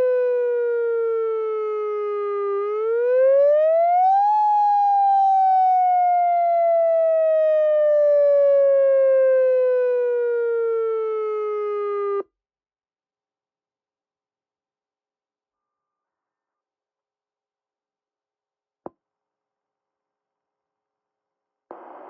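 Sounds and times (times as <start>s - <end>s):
outdoor warning siren wailing: 0.0s - 12.2s.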